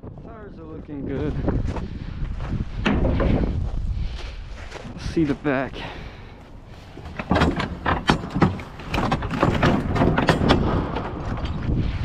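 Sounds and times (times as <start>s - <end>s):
footsteps crunching: 0.0s - 7.3s
wind rumble on microphone: 0.0s - 12.0s.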